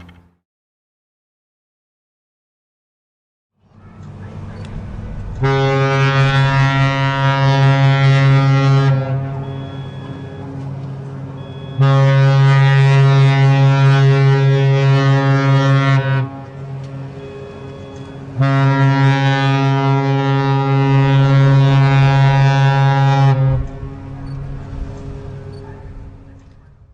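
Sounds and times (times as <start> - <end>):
ship horn blasts: 5.2 - 26.1.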